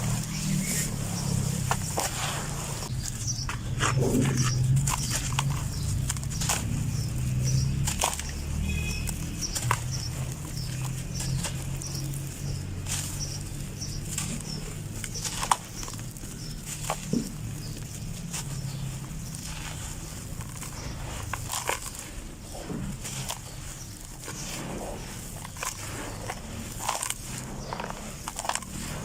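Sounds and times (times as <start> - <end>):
dry dirt crunching: 0.0 - 29.0.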